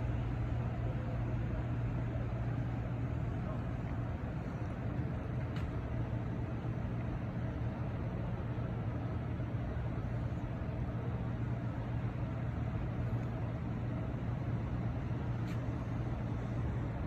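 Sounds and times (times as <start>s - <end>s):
faint click: 5.4s - 5.8s, 15.4s - 15.8s.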